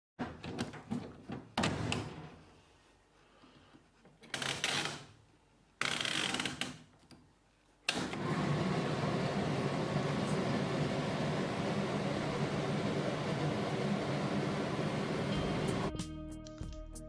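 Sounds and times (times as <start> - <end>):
tumble dryer humming: 7.9 - 15.9.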